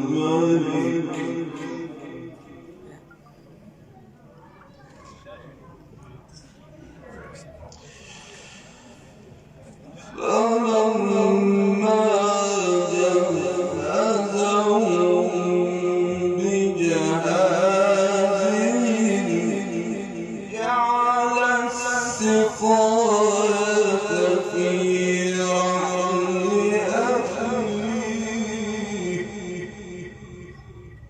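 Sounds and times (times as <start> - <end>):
man chanting melodically: 0.0 - 3.1, 9.9 - 31.0
breaths between phrases: 7.8 - 10.2.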